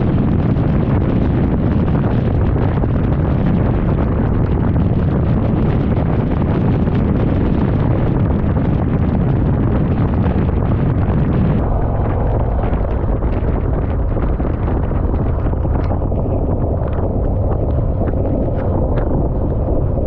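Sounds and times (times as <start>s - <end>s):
motorcycle engine and road rumble: 0.0s - 20.0s
wind rushing over microphone: 0.0s - 20.0s.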